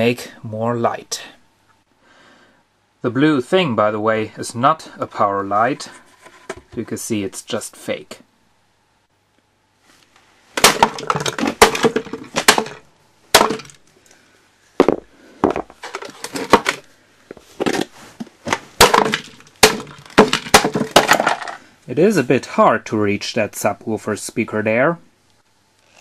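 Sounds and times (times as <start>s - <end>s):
plastic housing knocking and rattling: 10.6s - 12.8s.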